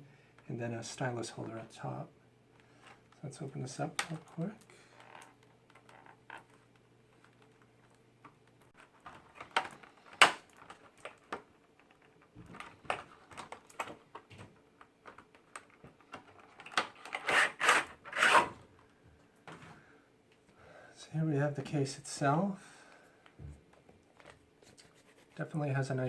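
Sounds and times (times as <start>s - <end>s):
plastic and cardboard packaging clicks: 4.0s - 18.0s
rustling scrapes: 17.0s - 18.6s.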